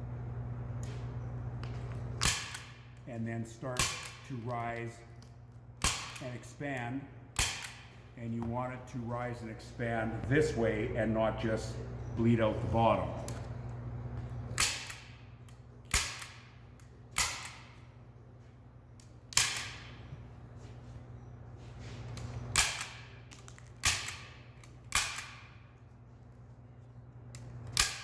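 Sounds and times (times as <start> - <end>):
low steady hum: 0.0 - 28.0
staple gun snapping: 2.2 - 2.8, 3.8 - 6.4, 7.4 - 7.9, 14.6 - 17.8, 19.0 - 20.0, 22.5 - 25.6, 27.4 - 28.0.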